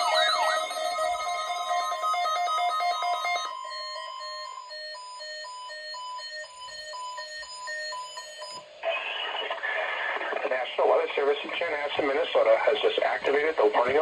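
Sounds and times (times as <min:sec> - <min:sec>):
steady electronic tone: 0:00.0 - 0:04.6
alternating high and low beeps: 0:00.0 - 0:08.6
pulsing electronic alarm tones: 0:00.0 - 0:08.6.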